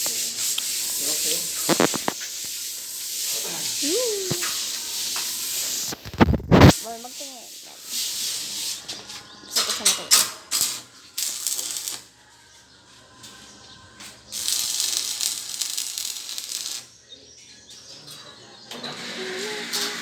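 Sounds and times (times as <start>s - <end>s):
welding arc crackling and hissing: 0.0s - 8.8s, 10.6s - 12.1s, 14.3s - 16.9s.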